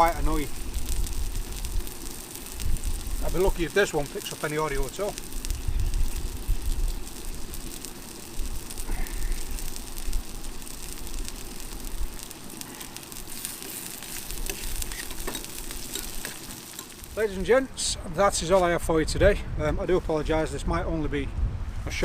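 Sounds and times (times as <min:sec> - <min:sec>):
wood fire crackling: 0:00.0 - 0:20.6.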